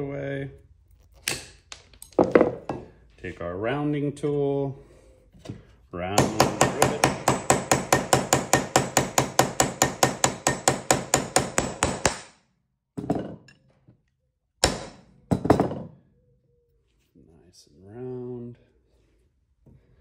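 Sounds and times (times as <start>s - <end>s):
hammer striking metal tool: 6.2s - 12.3s.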